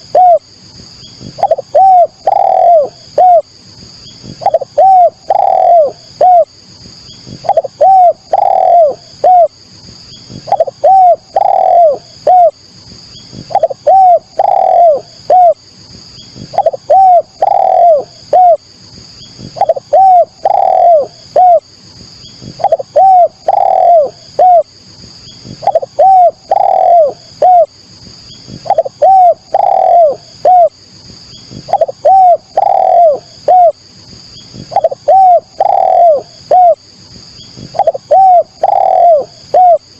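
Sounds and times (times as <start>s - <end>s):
dove cooing: 0.0s - 0.5s, 1.2s - 3.5s, 4.3s - 6.5s, 7.3s - 9.6s, 10.3s - 12.6s, 13.4s - 15.6s, 16.4s - 18.6s, 19.4s - 21.7s, 22.4s - 24.7s, 25.5s - 27.7s, 28.5s - 30.8s, 31.5s - 33.8s, 34.6s - 36.8s, 37.6s - 39.9s.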